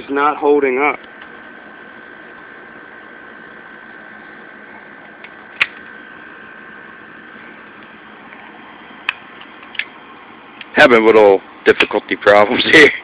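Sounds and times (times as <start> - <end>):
steady hum and hiss: 0.0 - 13.0
sharp click: 5.2 - 5.9.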